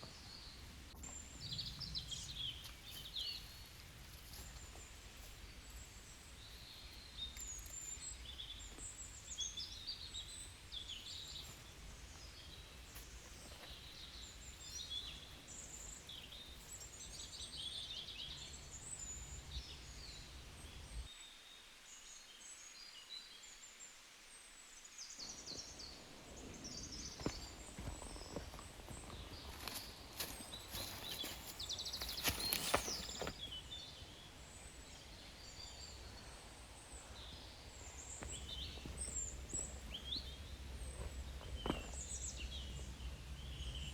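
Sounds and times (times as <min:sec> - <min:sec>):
small birds chirping: 0:00.0 - 0:43.9
low background rumble: 0:33.3 - 0:43.9.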